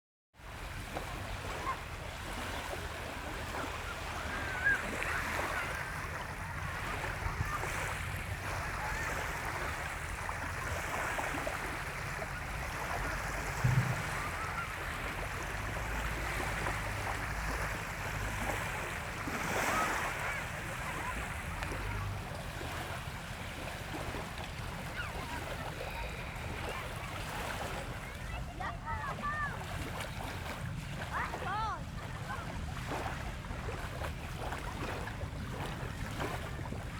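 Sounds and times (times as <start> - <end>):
surf washing onto beach: 0.6 - 33.2
wind on microphone: 13.0 - 18.5.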